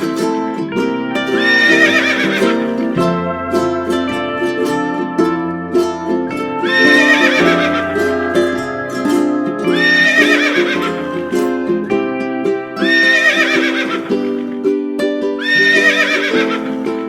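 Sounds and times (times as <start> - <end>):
music with plucked strings: 0.0 - 17.0
horse whinnying: 1.4 - 2.6, 9.9 - 11.0, 12.9 - 14.0, 15.4 - 16.7.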